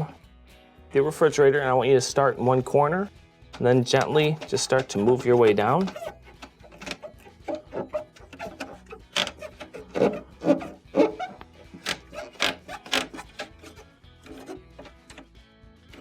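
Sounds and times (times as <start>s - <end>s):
rubber gasket popping and scraping: 3.5s - 16.0s.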